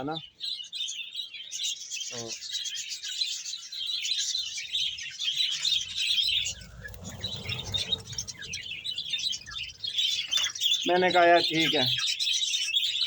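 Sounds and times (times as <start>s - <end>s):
budgerigars chattering: 0.0s - 13.0s
low rumbling noise: 5.7s - 10.6s.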